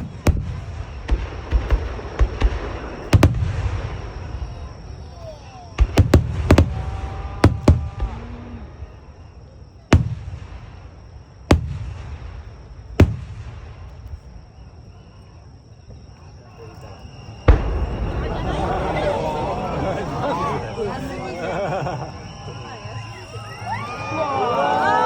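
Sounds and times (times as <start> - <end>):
firework shells booming: 0.0 - 14.8, 17.4 - 20.5.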